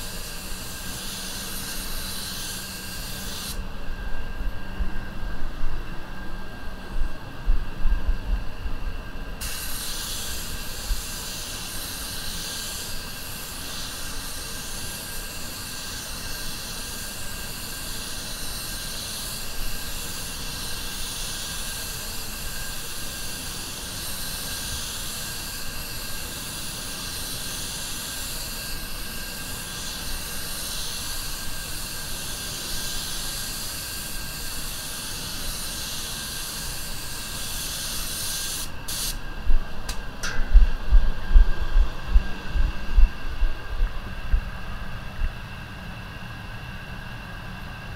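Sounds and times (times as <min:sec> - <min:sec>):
spray gun hissing: 0:00.0 - 0:03.6, 0:09.4 - 0:39.2
low rumble: 0:40.4 - 0:45.3.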